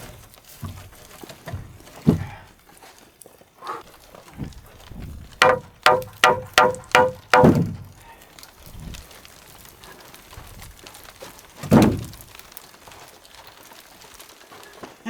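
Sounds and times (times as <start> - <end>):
dull heavy hammer blow: 5.4 - 7.7
hammer blows ringing on metal: 5.4 - 7.7.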